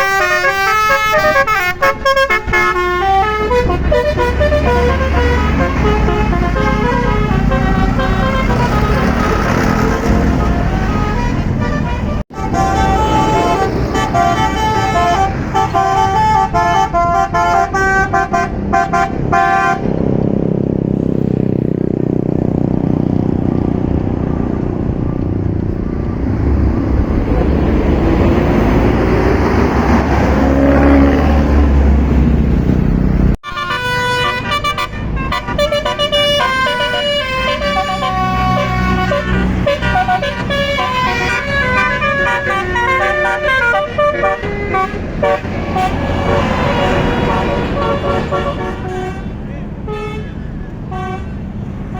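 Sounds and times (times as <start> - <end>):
bus horn melody: 0.0 - 20.0, 33.4 - 51.9
bus engine revving: 0.0 - 51.9.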